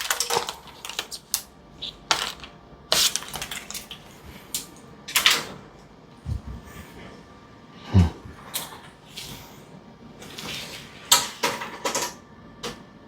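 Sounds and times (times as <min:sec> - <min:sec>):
packaging rustling: 0:00.0 - 0:01.4
small items clicking and tapping: 0:00.0 - 0:04.0.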